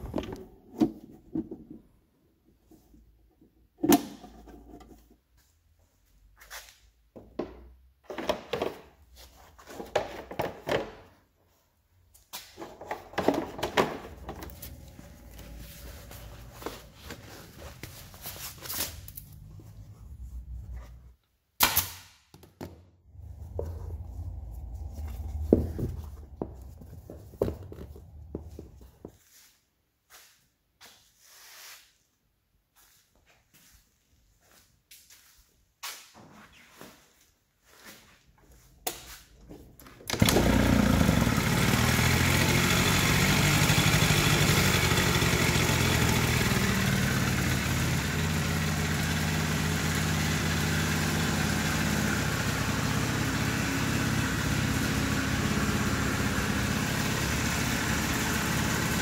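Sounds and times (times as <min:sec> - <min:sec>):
low hum: 0:23.1 - 0:29.0.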